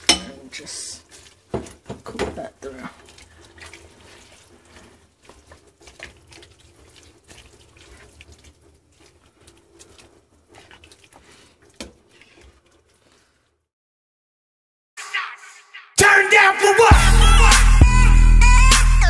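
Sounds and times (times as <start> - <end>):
soup bubbling in a pot: 0.0 - 13.7.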